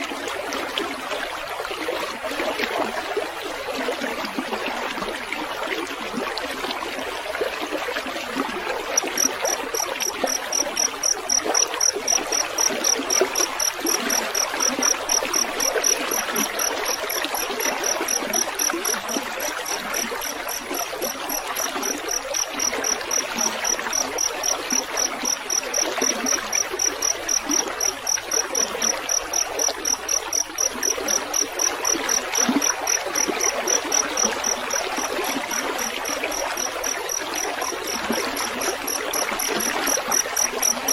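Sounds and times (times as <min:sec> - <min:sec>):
water babbling in a stream: 0:00.0 - 0:40.9
cricket chirping trill: 0:08.9 - 0:40.9.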